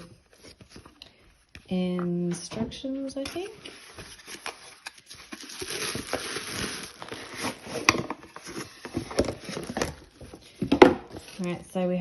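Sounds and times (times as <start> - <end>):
packaging rustling: 3.3 - 11.5.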